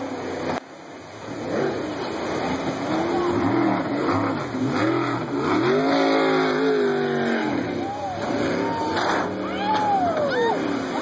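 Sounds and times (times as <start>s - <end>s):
vehicle engine revving: 1.3s - 9.8s.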